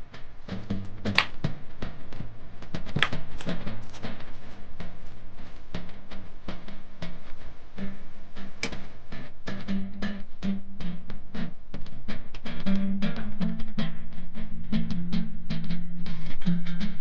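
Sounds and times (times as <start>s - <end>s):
instrumental music with drums and bass: 0.0s - 17.0s.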